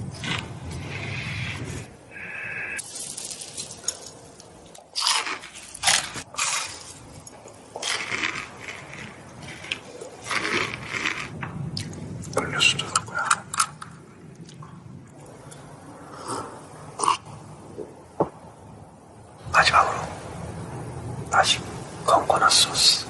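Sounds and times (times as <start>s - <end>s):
crunchy food chewing: 4.6s - 12.4s.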